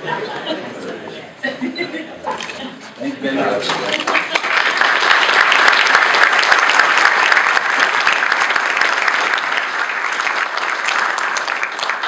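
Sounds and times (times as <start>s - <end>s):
audience applauding: 3.5s - 12.0s.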